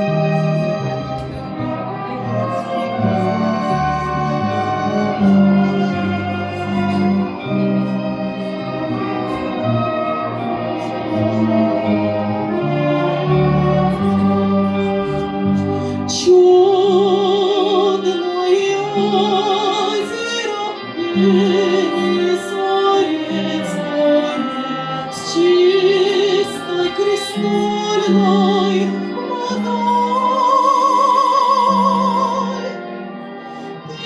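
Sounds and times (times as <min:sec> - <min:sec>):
woman singing operatically: 0:16.1 - 0:32.9.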